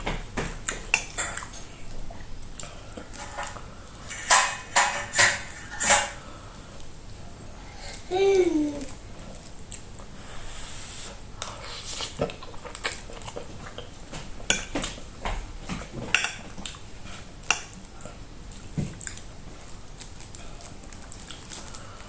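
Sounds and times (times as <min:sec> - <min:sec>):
cutlery scraping on a plate: 0:03.2 - 0:06.2.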